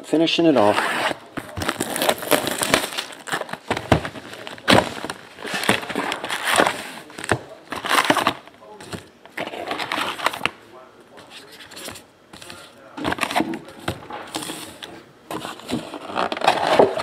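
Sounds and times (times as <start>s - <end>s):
wrappers crinkling and tearing: 0.6s - 8.5s.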